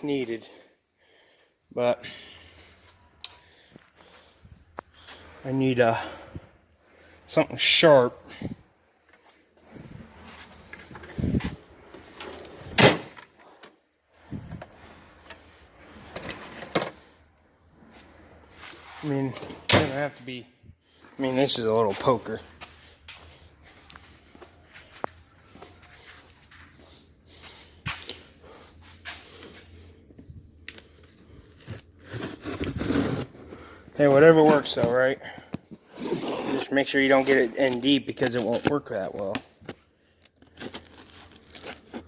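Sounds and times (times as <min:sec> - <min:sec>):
rummaging with tools and objects: 0:08.2 - 0:20.2, 0:20.8 - 0:42.0
poker scraping cardboard box: 0:35.8 - 0:36.7.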